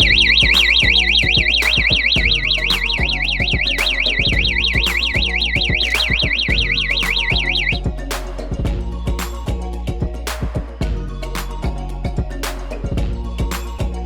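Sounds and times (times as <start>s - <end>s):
warbling alarm siren: 0.0s - 9.2s
background music with beat: 0.0s - 14.0s.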